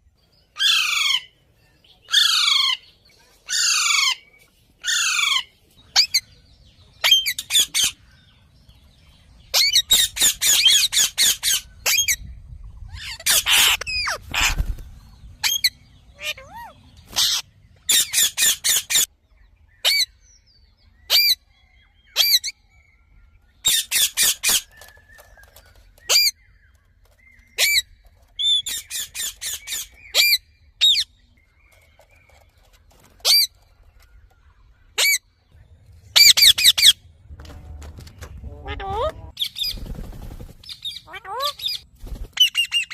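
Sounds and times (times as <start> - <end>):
parrot squawking: 13.0 - 14.6, 15.4 - 19.1, 38.6 - 39.6, 40.9 - 41.8.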